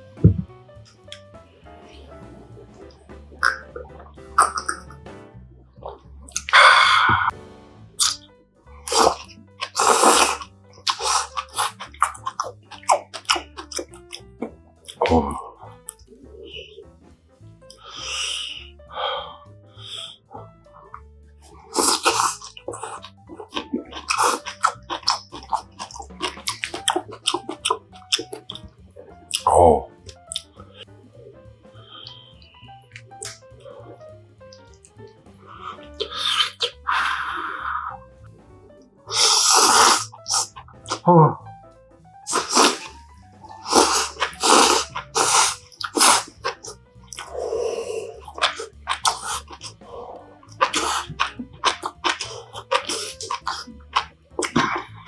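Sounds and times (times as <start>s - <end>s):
slurping hot broth: 0.3s - 5.0s, 6.3s - 7.4s, 8.0s - 16.8s, 17.7s - 38.1s, 39.0s - 41.5s, 42.2s - 55.0s
wet chewing and lip smacks: 8.0s - 15.1s, 19.9s - 30.9s, 32.0s - 37.2s, 39.1s - 41.1s, 42.2s - 47.4s, 48.1s - 55.0s.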